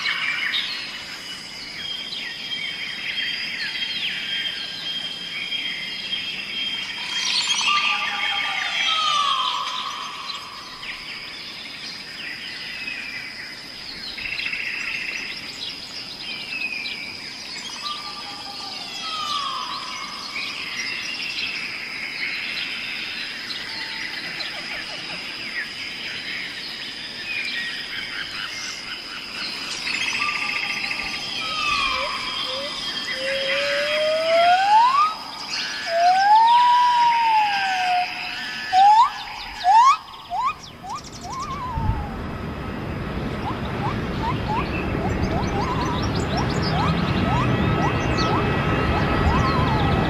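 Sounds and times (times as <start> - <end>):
songbirds chirping and trilling: 0.0 - 50.0
falling whistle: 31.4 - 42.2, 43.4 - 50.0.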